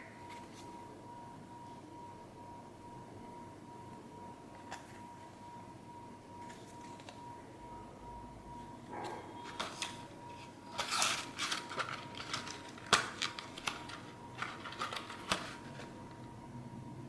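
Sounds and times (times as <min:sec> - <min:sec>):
packaging clicking and rustling: 0:09.4 - 0:16.3.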